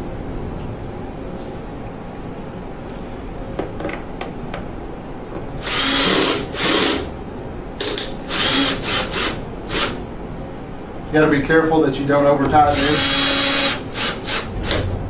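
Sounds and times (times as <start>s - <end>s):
power driver driving screws: 5.6s - 7.1s, 12.7s - 14.9s.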